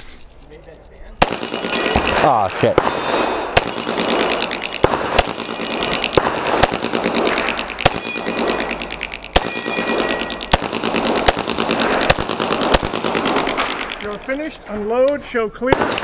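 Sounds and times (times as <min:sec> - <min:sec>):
steel targets ringing: 0:01.2 - 0:02.2, 0:03.6 - 0:06.2, 0:07.7 - 0:10.5
pistol shots: 0:01.2 - 0:14.3, 0:15.7 - 0:16.0.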